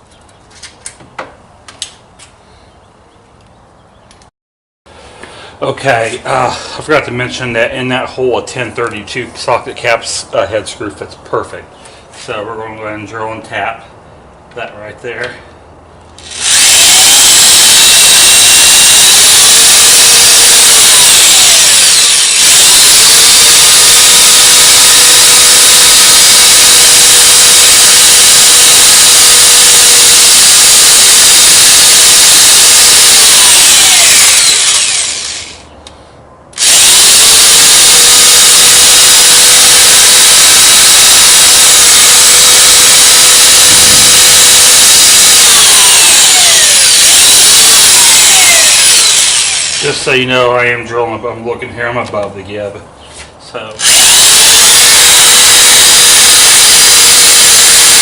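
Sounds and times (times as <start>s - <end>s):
electric drill whining: 16.2s - 35.7s, 36.6s - 50.0s, 53.8s - 58.0s.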